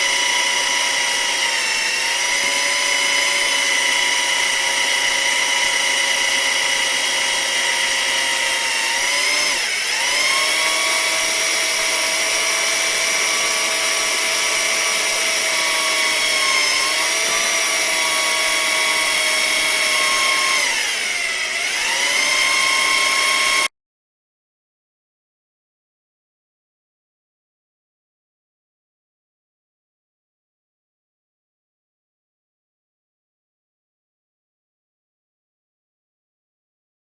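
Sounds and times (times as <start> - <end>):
electric drill motor whining: 0.0 - 23.7.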